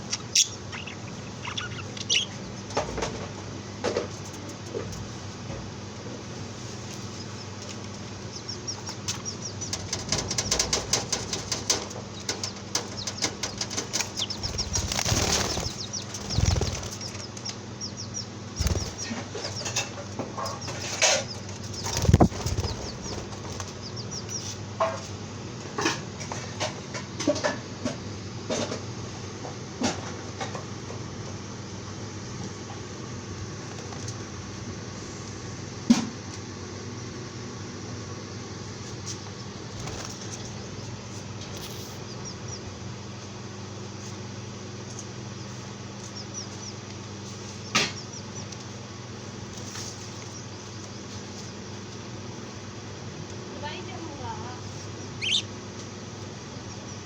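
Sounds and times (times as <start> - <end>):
small birds twittering: 0.0 - 3.0, 6.8 - 24.6, 39.6 - 43.8, 44.9 - 52.8, 53.5 - 57.0
wings flapping: 9.8 - 17.5, 18.5 - 19.2, 21.6 - 23.8, 39.6 - 40.6.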